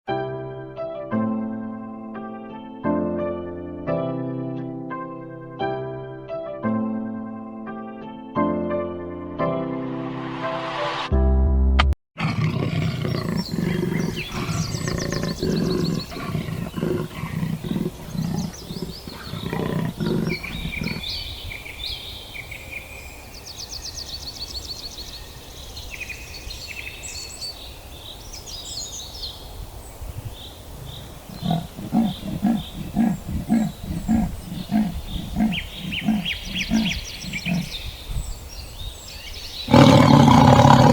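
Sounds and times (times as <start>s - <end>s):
big cat roaring grunts: 12.2s - 21.2s, 31.3s - 37.8s, 39.7s - 40.9s
birds chirping and trilling: 12.2s - 40.9s.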